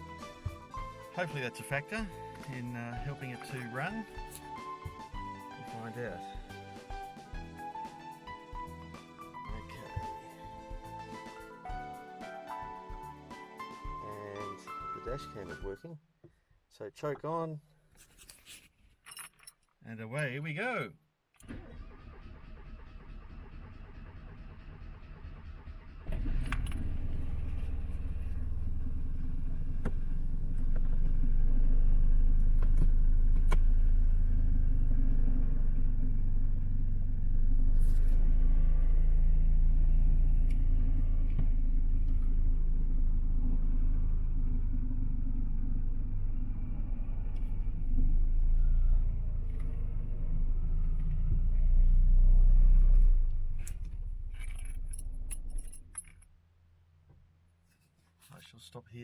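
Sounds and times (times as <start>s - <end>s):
small car engine running: 21.4s - 55.8s.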